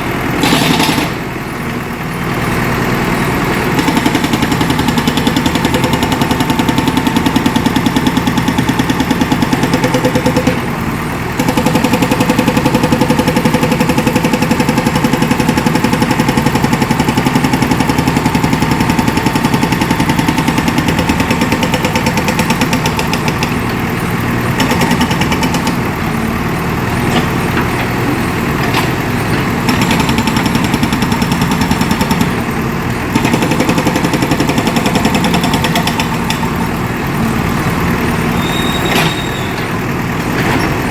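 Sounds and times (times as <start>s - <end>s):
diesel engine running: 0.0s - 40.9s
hydraulic rock breaker hammering: 0.3s - 1.4s, 3.6s - 23.7s, 24.5s - 25.9s, 27.0s - 36.8s.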